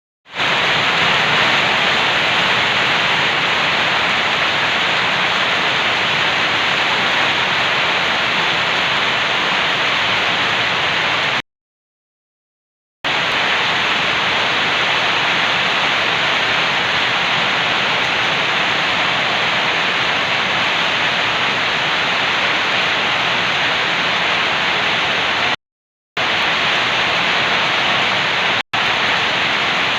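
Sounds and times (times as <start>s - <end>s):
heavy rain hiss: 0.4s - 11.4s, 13.1s - 25.6s, 26.2s - 29.9s.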